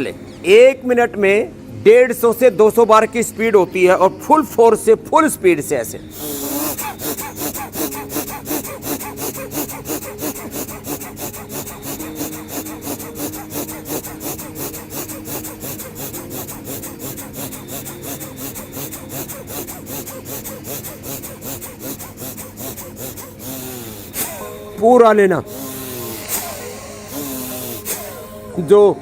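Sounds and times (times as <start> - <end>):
rapid forceful breathing: 6.0 - 28.6.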